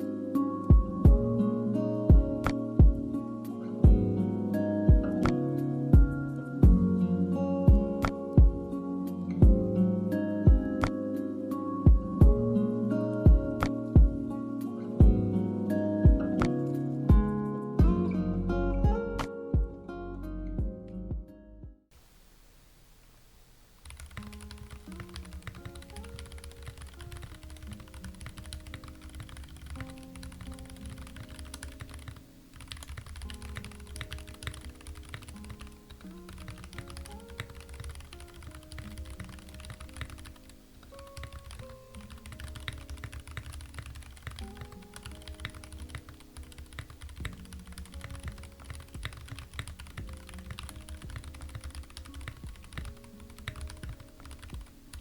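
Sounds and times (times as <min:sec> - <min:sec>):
soft background music: 0:00.0 - 0:21.9, 0:23.9 - 0:55.0
mechanical keyboard typing: 0:23.8 - 0:55.0.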